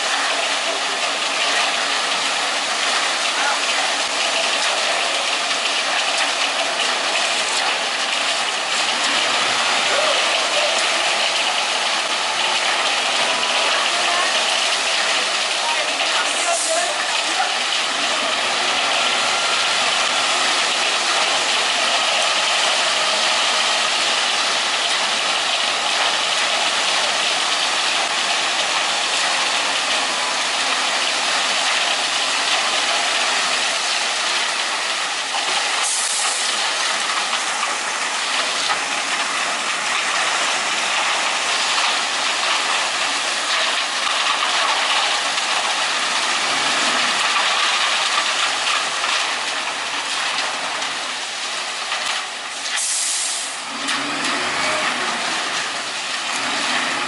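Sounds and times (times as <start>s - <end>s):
machinery hissing: 52.7s - 57.0s.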